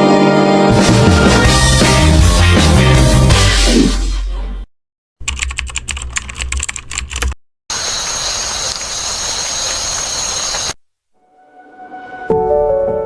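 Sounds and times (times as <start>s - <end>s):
intro music: 0.1s - 4.3s.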